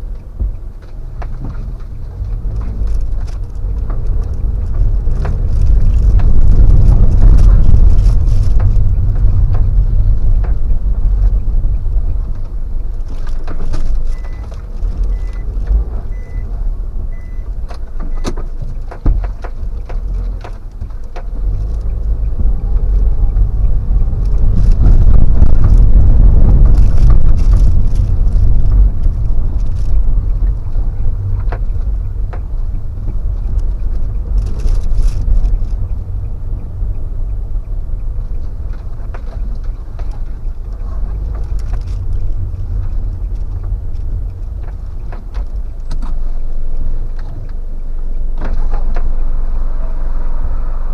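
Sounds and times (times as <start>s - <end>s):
engine and road rumble: 0.0s - 50.9s
faint high beeps: 15.1s - 15.5s, 16.1s - 16.5s.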